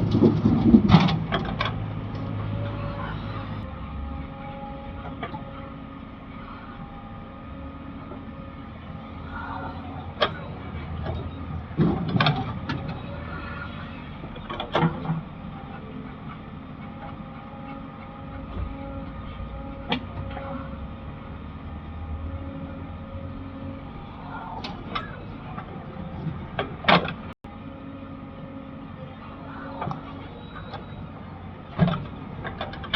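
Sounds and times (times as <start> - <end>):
metal clanks and knocks: 0.0 - 2.8, 10.2 - 13.2
diesel engine running: 0.0 - 32.9.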